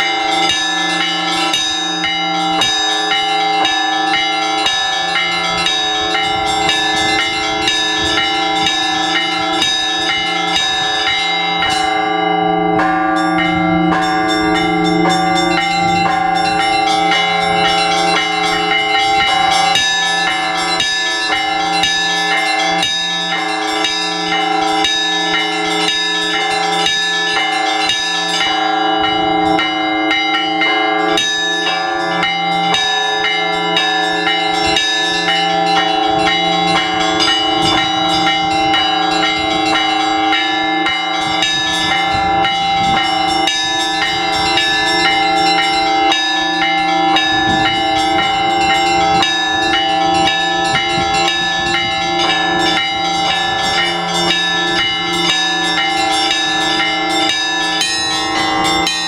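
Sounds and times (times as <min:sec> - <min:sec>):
church bells pealing: 0:00.0 - 0:59.0
low tones of large bells: 0:00.0 - 0:59.0.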